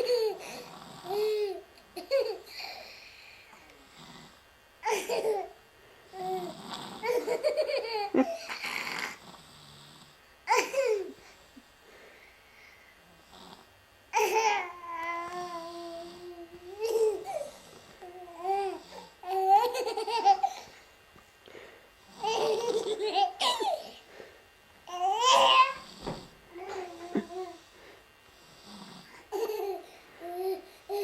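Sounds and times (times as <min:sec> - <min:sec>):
woman laughing: 0:08.0 - 0:08.5, 0:26.9 - 0:27.5
person snoring: 0:08.2 - 0:10.2, 0:25.6 - 0:29.3.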